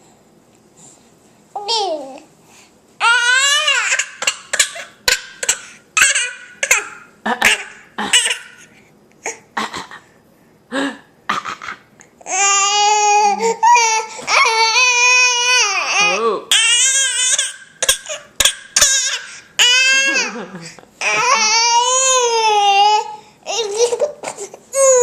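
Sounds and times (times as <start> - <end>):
baby wailing cry: 3.0 - 8.6, 12.3 - 20.4, 21.0 - 25.0.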